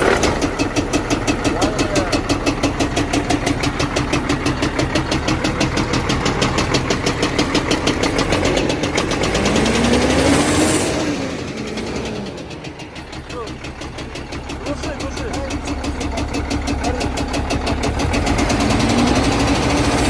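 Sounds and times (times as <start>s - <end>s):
diesel engine idling with knock: 0.0s - 20.0s.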